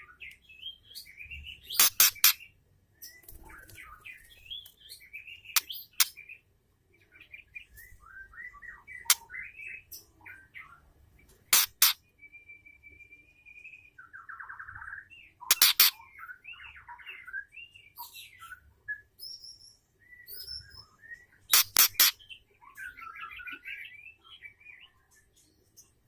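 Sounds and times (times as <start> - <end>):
bird whistled calls and chirps: 7.1 - 10.9, 11.5 - 25.4.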